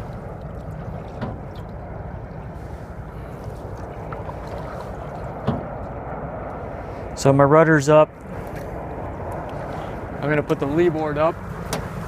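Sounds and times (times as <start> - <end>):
low rumble and rustle: 0.0 - 12.0.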